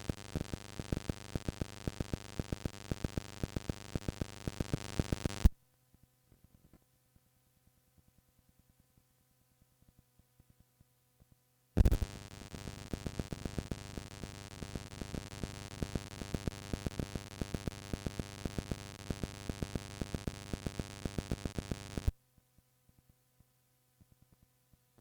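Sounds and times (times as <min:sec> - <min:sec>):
tape hiss and hum: 0:00.0 - 0:05.6, 0:11.2 - 0:25.0
rapid crackling clicks: 0:11.8 - 0:22.1.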